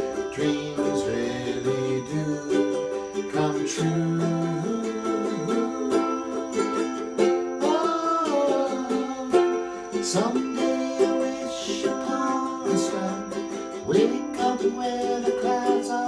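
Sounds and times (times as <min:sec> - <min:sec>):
ukulele strumming chords: 0:00.0 - 0:16.0.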